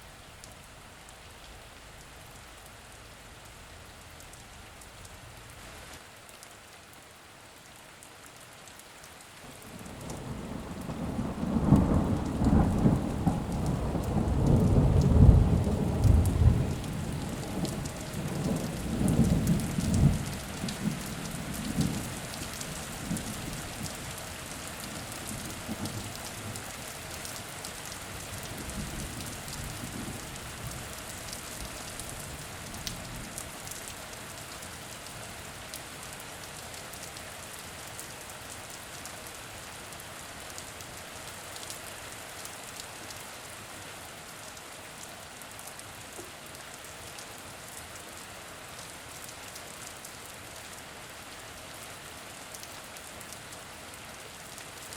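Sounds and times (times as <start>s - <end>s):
steady rain falling: 0.0s - 54.9s
low roll of thunder: 9.7s - 21.0s.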